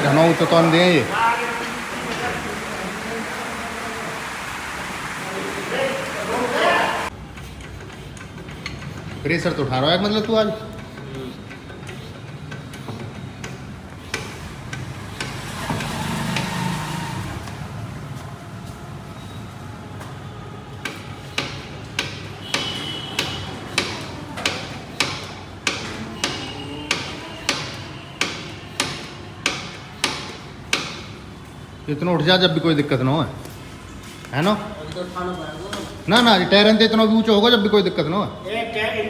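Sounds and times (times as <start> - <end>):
steady noise: 0.0 - 7.1.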